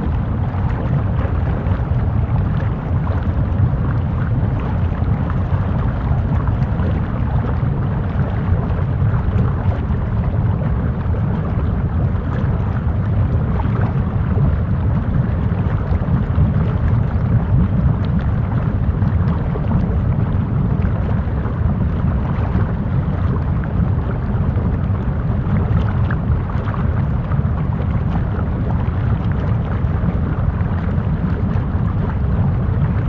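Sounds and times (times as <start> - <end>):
deep steady lava noise: 0.0 - 33.0.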